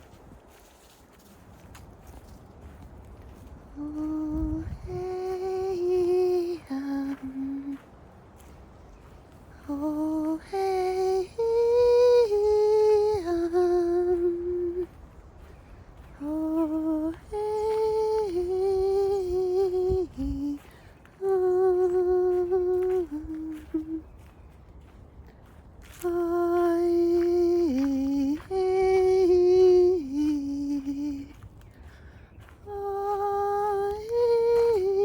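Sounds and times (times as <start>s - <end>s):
person singing wordless chant: 3.7s - 7.9s, 9.5s - 24.3s, 25.8s - 31.7s, 32.4s - 35.0s.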